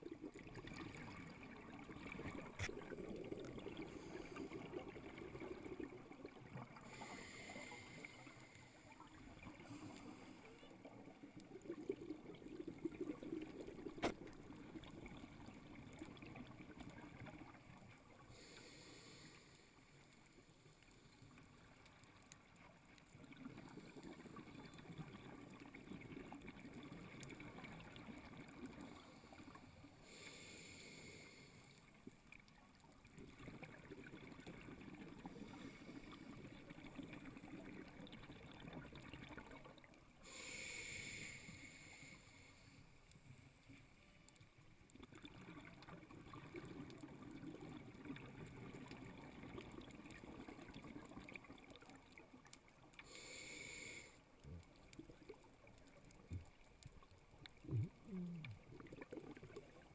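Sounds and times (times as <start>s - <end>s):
regulator hissing inhalations: 40.2s - 42.8s, 53.1s - 54.2s
bubbling exhalations: 57.6s - 59.8s.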